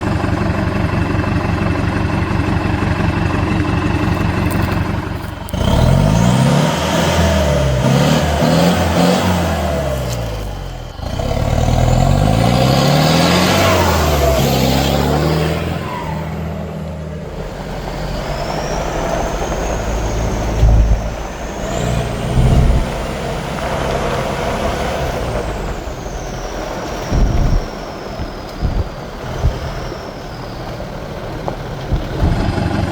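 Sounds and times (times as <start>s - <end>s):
diesel engine revving: 0.0s - 32.9s.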